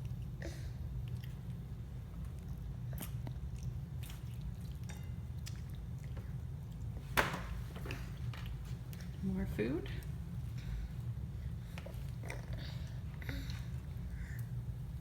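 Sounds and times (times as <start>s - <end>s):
wet chewing clicks: 0.0s - 7.0s
steady low hum: 0.0s - 15.0s.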